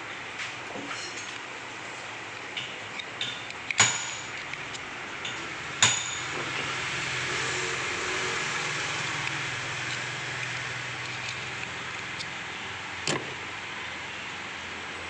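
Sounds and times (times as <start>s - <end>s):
metal tools clinking: 0.8s - 1.4s, 2.4s - 6.7s
sharp metallic knocks: 2.6s - 4.4s, 5.2s - 6.7s.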